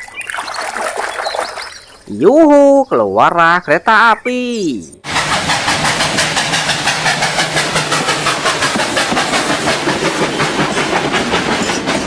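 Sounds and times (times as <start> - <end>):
train clattering: 5.1 - 12.0.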